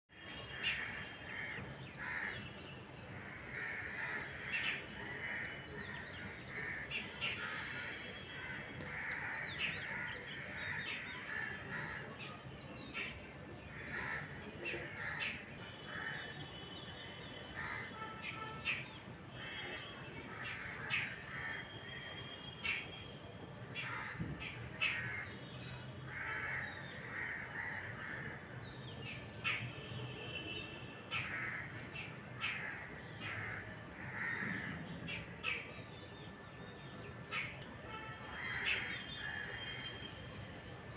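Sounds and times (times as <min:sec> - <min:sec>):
crows cawing: 0:00.5 - 0:02.4, 0:03.2 - 0:12.2, 0:13.8 - 0:16.4, 0:17.6 - 0:22.8, 0:23.8 - 0:25.4, 0:26.1 - 0:28.6, 0:31.1 - 0:35.6, 0:38.3 - 0:39.9.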